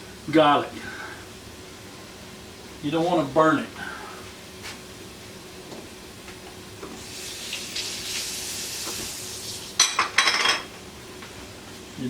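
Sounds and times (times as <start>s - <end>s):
garlic sizzling in butter: 7.0s - 9.8s.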